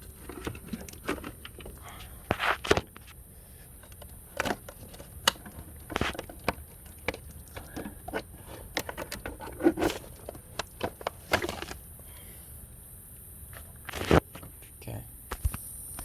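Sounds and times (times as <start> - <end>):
objects being handled: 0.0 - 12.0.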